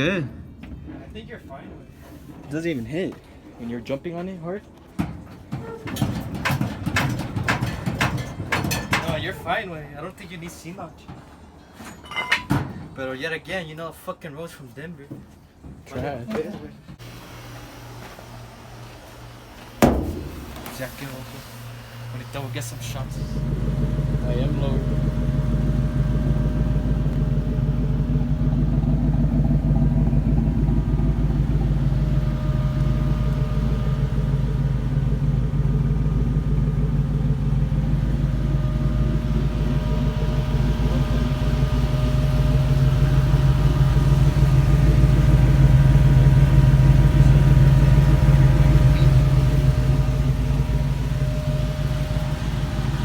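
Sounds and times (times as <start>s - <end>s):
truck engine running: 5.4s - 9.9s, 17.0s - 53.0s.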